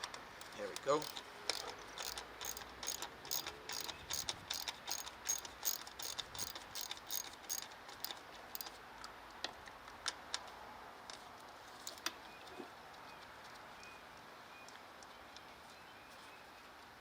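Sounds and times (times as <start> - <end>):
socket ratchet clicking: 0.4 - 8.7.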